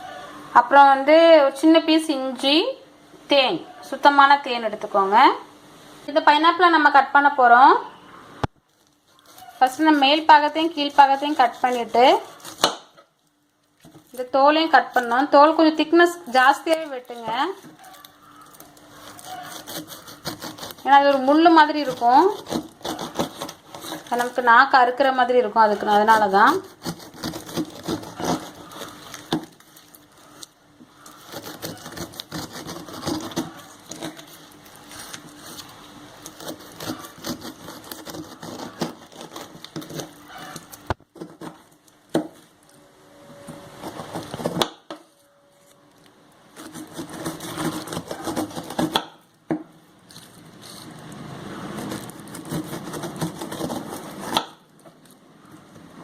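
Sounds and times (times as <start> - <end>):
knife cutting pineapple rind: 8.8 - 13.1, 13.8 - 42.8, 43.5 - 45.8, 46.5 - 56.0.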